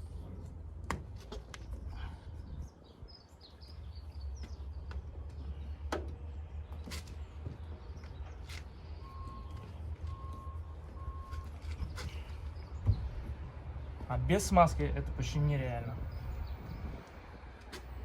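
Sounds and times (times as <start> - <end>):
birds chirping: 1.3 - 18.0
steady low rumble: 4.0 - 18.0.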